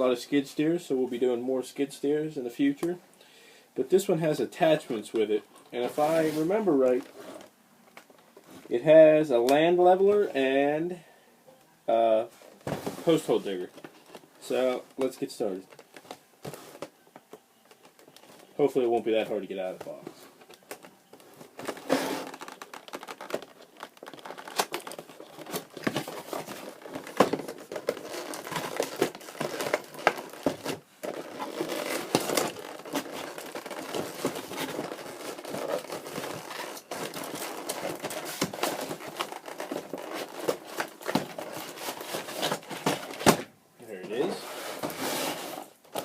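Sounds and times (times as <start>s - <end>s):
cardboard packaging crinkling: 12.6s - 43.5s.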